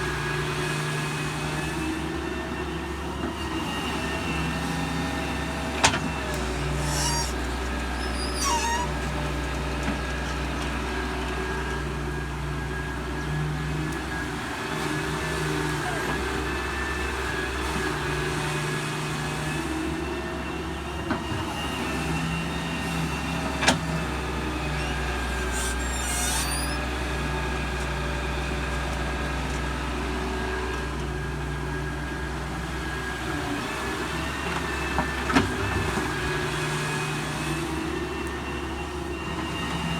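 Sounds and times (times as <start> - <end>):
excavator engine droning: 0.0 - 39.9
high chirping squeaks: 8.0 - 8.9.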